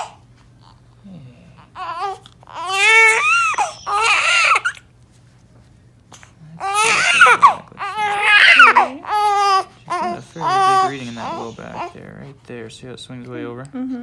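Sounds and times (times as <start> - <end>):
newborn baby crying: 0.0 - 0.2, 1.6 - 4.9, 6.1 - 12.3.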